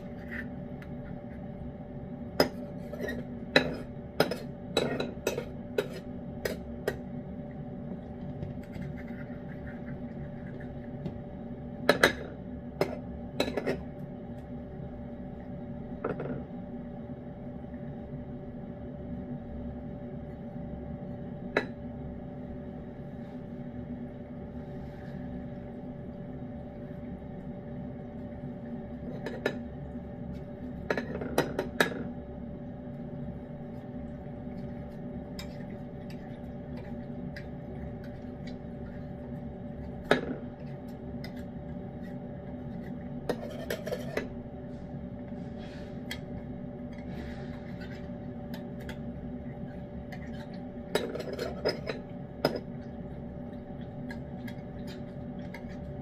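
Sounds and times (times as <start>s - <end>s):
steady background hum: 0.0s - 56.0s
cat eating wet food: 47.0s - 56.0s.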